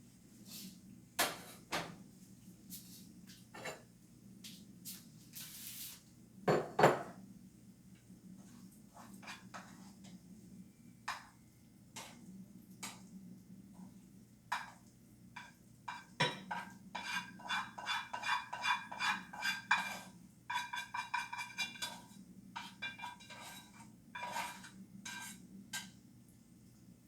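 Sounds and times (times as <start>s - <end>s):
metal clinking on a dish: 15.9s - 16.8s.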